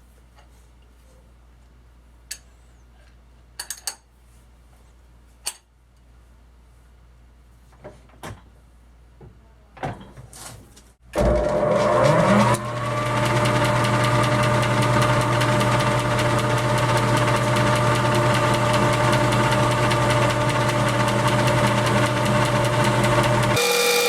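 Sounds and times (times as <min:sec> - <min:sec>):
electric motor whining and humming: 0:11.2 - 0:24.0.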